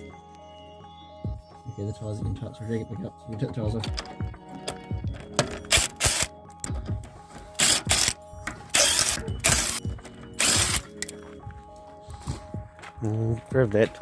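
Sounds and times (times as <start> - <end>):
impact wrench rattling: 5.2 - 10.8.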